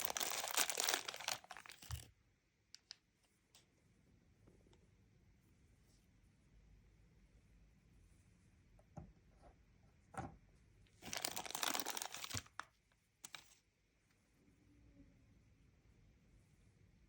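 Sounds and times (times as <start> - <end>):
packaging tearing and crinkling: 0.0 - 2.0, 11.0 - 12.6.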